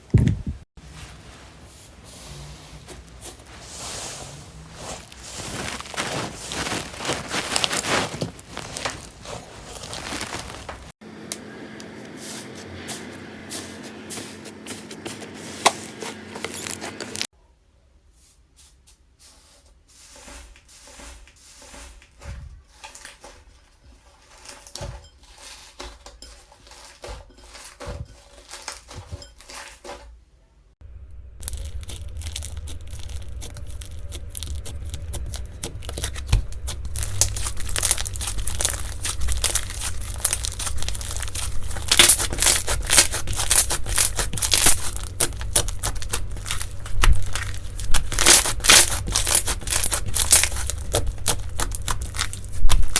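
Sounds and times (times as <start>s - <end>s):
dense crackling and crunching: 2.4s - 11.0s, 14.4s - 17.3s, 30.8s - 52.9s
slime being squeezed by hand: 31.4s - 52.9s.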